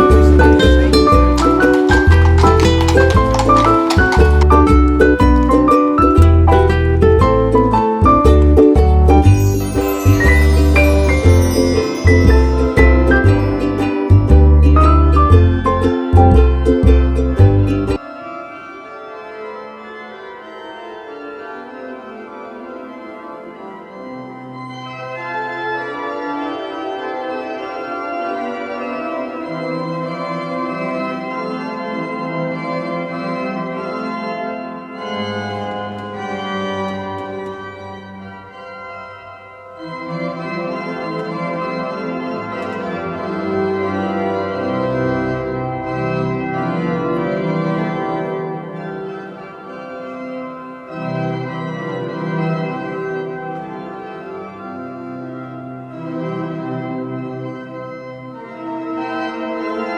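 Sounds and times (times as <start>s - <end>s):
organ chords: 18.6s - 59.9s.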